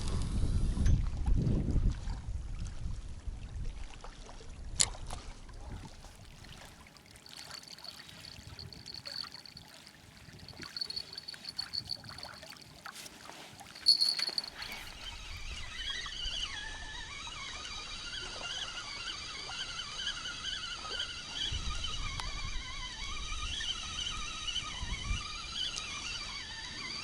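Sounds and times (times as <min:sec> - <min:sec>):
water lapping and trickling: 0:05.7 - 0:15.8
thin high-pitched tone: 0:10.5 - 0:15.0.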